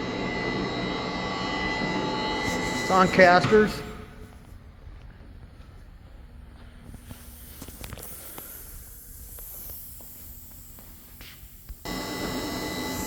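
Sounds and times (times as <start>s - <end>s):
coolant pump whining: 0.0s - 4.4s, 11.8s - 13.0s.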